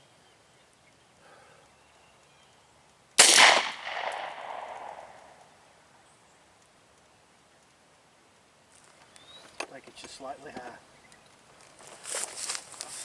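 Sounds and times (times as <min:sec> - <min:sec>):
gunshot with echo: 0:03.2 - 0:05.4.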